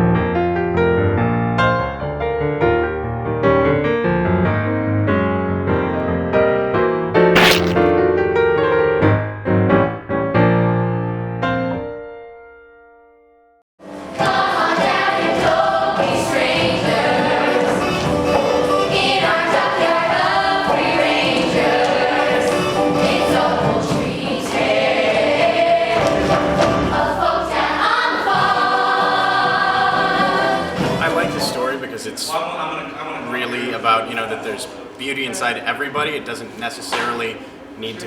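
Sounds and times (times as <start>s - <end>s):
chorus singing with accompaniment: 14.0s - 31.1s.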